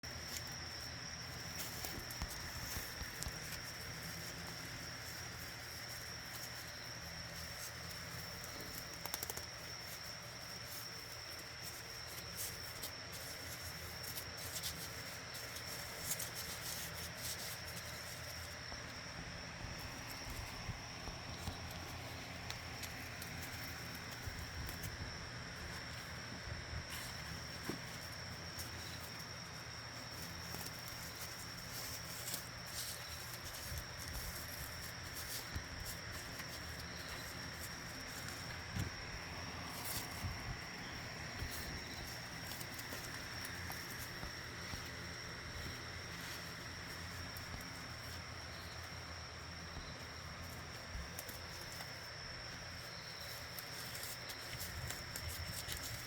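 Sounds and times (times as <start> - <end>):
high-pitched insect trill: 0.0 - 56.0
outdoor ambience: 0.0 - 56.0.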